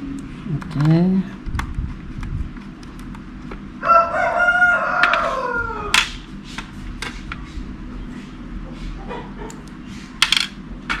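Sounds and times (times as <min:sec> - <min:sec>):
rooster crowing: 0:03.8 - 0:06.0.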